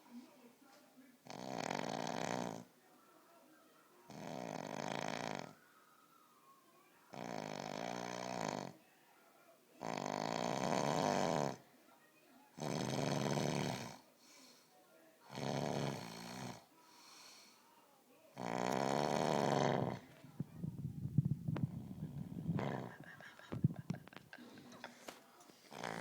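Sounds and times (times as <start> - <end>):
soft breaths: 0.0 - 1.2, 13.4 - 26.0
person snoring: 1.3 - 2.7, 4.1 - 5.6, 7.2 - 8.8, 9.8 - 11.6, 18.4 - 20.1, 21.6 - 23.7, 25.7 - 26.0.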